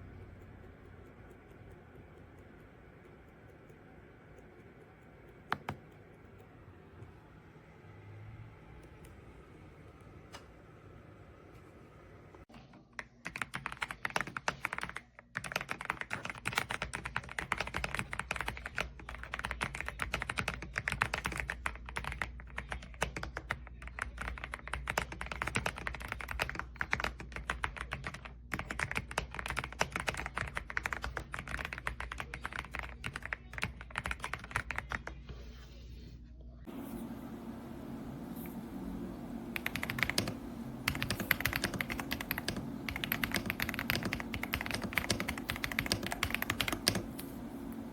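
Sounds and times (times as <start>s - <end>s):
mechanical keyboard typing: 0.3s - 6.6s, 13.0s - 35.2s, 39.3s - 47.9s.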